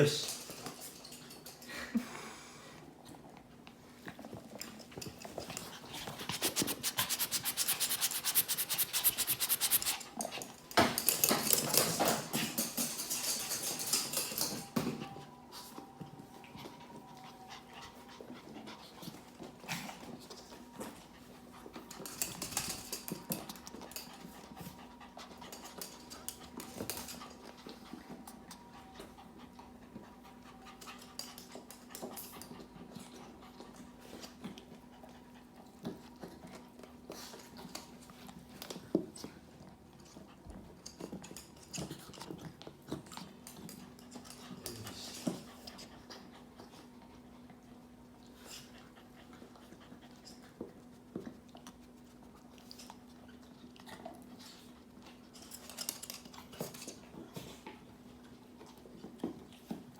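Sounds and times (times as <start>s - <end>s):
puppies panting: 4.9s - 10.6s, 16.4s - 38.5s, 41.6s - 55.6s.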